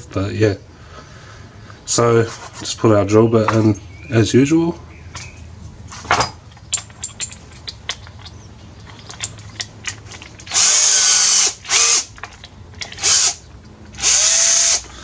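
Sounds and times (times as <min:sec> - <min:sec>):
electric drill bursts: 0:10.4 - 0:12.2, 0:12.9 - 0:15.0.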